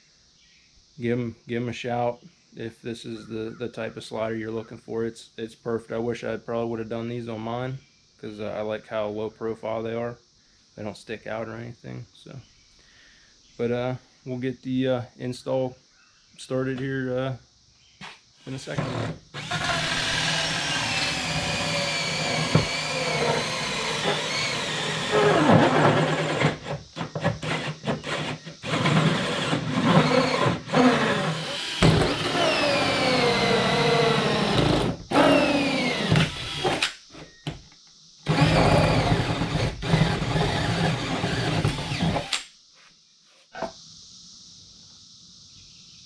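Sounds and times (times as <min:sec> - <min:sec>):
power drill cutting through plastic: 0:18.4 - 0:37.0, 0:38.2 - 0:42.5.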